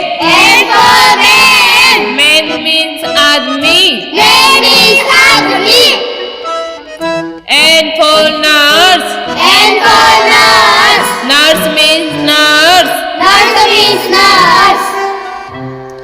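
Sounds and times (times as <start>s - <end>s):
backing music: 0.0s - 16.0s
person singing: 7.5s - 15.5s.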